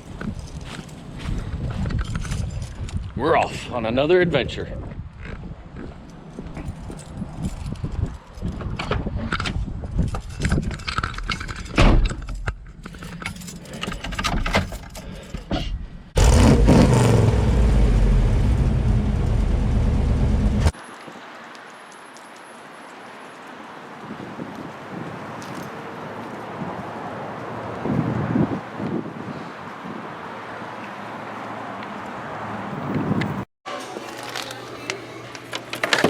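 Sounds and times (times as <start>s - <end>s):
keys jangling: 6.0s - 8.5s, 12.8s - 15.5s
vehicle engine running: 16.2s - 20.7s.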